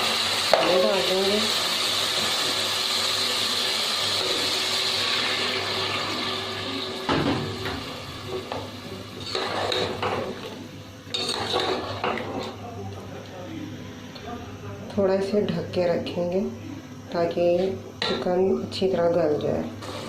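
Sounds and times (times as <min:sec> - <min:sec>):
water hissing in hot pan: 0:00.0 - 0:08.3.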